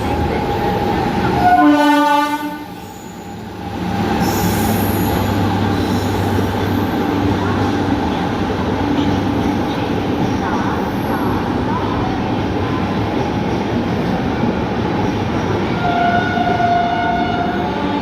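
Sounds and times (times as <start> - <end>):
train passing with rumble: 0.0 - 18.0
train horn: 1.4 - 2.7, 15.8 - 18.0.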